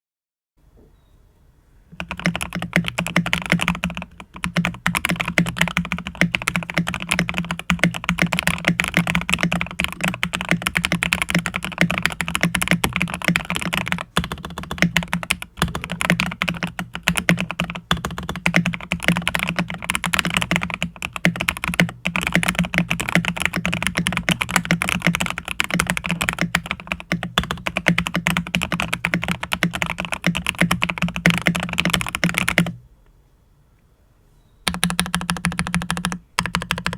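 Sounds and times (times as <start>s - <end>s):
fast mechanical keyboard typing: 1.9s - 32.8s, 34.7s - 36.9s.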